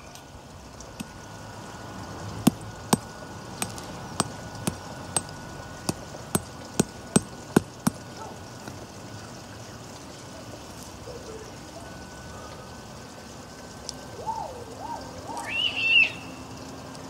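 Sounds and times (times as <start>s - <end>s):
sharp knocks: 2.5s - 5.3s, 5.9s - 8.0s.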